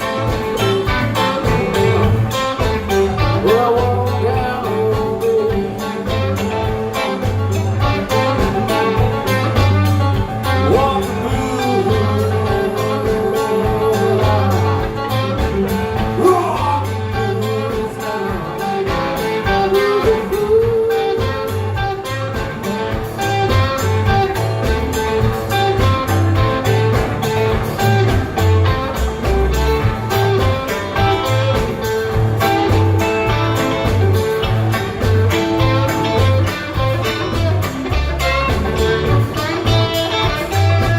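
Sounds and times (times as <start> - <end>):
bending guitar notes: 0.0 - 40.9
live blues band playing: 0.0 - 40.9.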